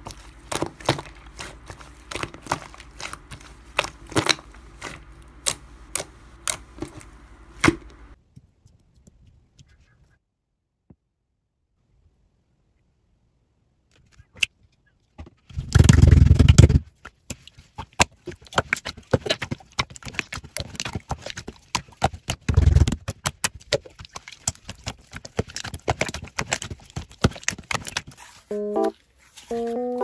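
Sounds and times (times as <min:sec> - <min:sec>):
slime squished by hand: 0:00.0 - 0:07.8
muffled squashes: 0:13.9 - 0:30.0.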